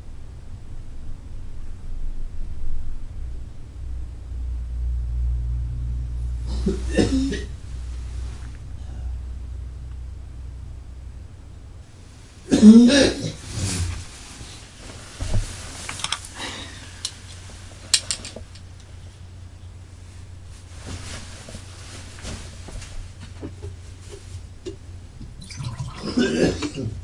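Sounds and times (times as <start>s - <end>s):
man coughing harshly: 6.5s - 7.6s, 12.5s - 13.4s, 25.9s - 27.0s.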